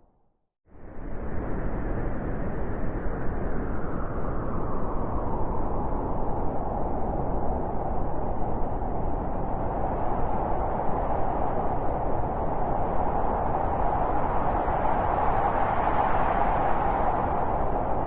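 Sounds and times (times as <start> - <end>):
howling blizzard wind: 0.7 - 18.0.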